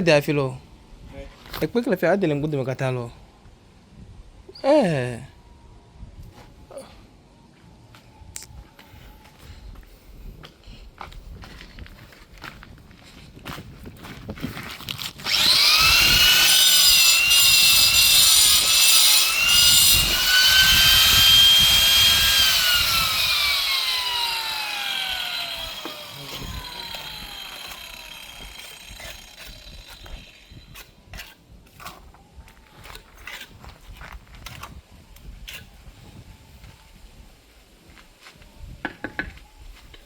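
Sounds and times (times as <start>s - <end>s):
electric grinder whining: 15.0s - 30.7s
stone cutting hiss: 15.3s - 31.3s.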